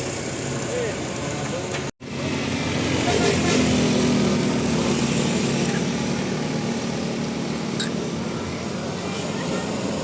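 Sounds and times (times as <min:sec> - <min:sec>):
heavy vehicle engine running: 0:00.0 - 0:10.0
road noise: 0:00.0 - 0:10.0.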